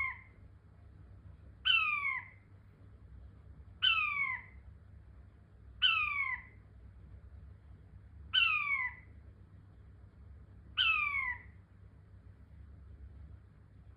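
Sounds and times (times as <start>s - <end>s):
quail calling: 0.0s - 0.3s, 1.6s - 2.4s, 3.8s - 4.6s, 5.8s - 6.6s, 8.3s - 9.1s, 10.8s - 11.5s.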